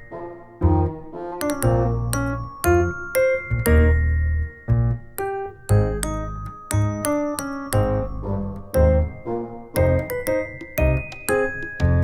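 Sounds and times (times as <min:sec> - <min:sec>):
electric piano chords: 0:00.0 - 0:12.0
bass line: 0:00.6 - 0:01.0, 0:01.6 - 0:05.1, 0:05.7 - 0:07.1, 0:07.7 - 0:11.1.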